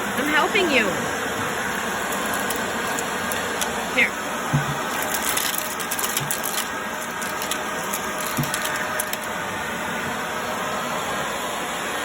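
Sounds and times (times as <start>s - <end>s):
vacuum cleaner running: 0.0s - 12.0s
debris rattling through vacuum: 1.1s - 9.4s.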